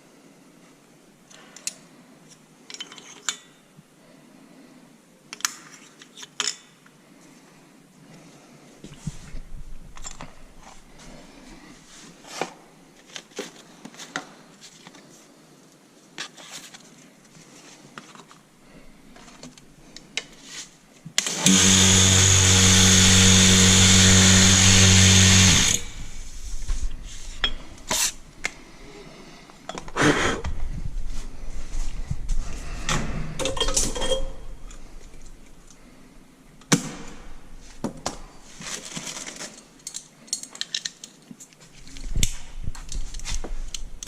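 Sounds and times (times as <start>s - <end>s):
power tool running: 21.2s - 26.3s
metal parts clicking: 39.4s - 41.2s.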